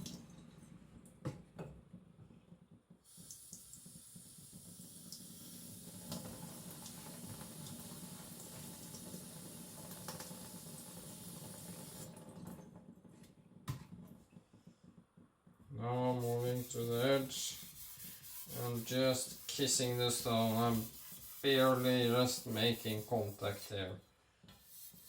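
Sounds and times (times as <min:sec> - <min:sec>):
running water on sharpening stone: 0:16.2 - 0:23.7.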